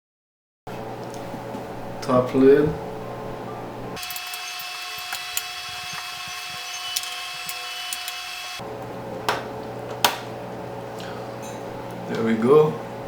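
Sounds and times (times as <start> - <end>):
cover snapping into place: 9.3 - 10.3.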